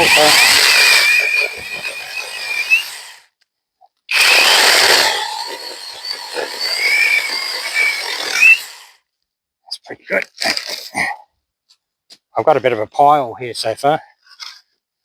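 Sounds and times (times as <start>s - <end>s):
electric chainsaw cutting log: 0.0s - 3.3s, 4.1s - 9.0s.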